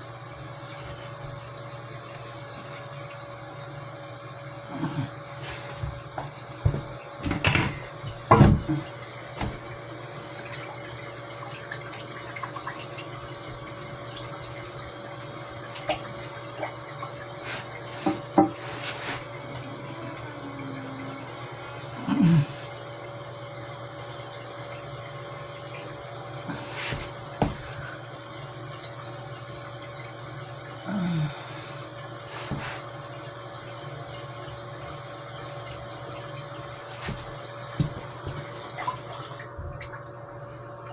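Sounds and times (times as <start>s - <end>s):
water running from a tap: 0.0s - 40.9s
knocks and clunks: 5.9s - 9.7s.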